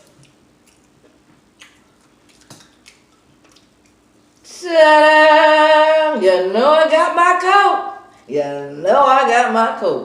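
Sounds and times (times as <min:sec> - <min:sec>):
person chewing: 0:00.0 - 0:04.4
faint hum: 0:00.0 - 0:10.0.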